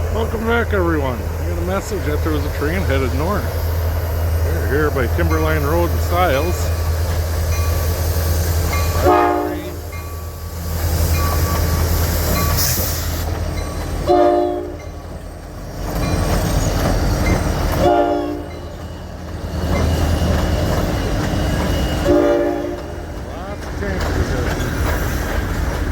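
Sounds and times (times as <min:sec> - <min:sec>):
diesel locomotive rumble: 0:00.0 - 0:25.9
locomotive horn blasts: 0:08.9 - 0:09.9, 0:14.0 - 0:14.8, 0:17.8 - 0:18.6, 0:22.0 - 0:22.9.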